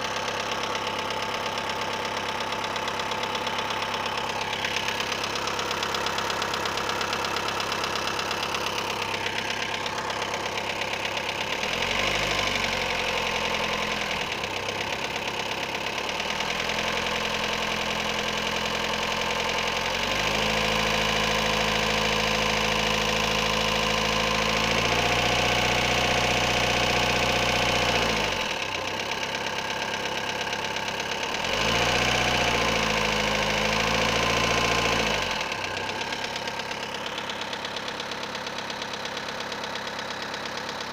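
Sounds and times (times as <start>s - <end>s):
knocking engine revving: 0.0s - 40.9s.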